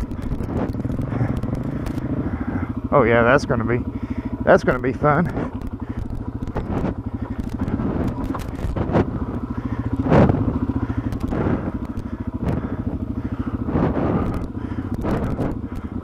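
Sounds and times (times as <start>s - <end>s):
motorcycle engine running: 0.0s - 16.0s.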